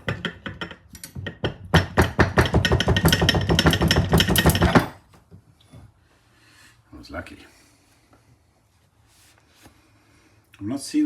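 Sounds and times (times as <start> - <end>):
rapid metal-on-metal knocking: 0.0 - 5.0.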